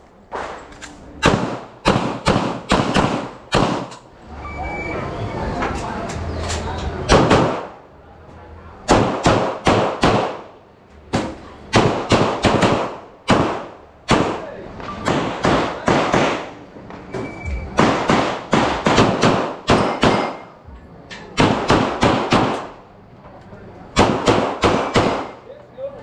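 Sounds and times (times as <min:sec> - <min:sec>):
pistol shots with echo: 0:01.2 - 0:04.0, 0:07.1 - 0:07.8, 0:08.9 - 0:16.6, 0:17.8 - 0:20.6, 0:21.3 - 0:22.8, 0:24.0 - 0:25.4.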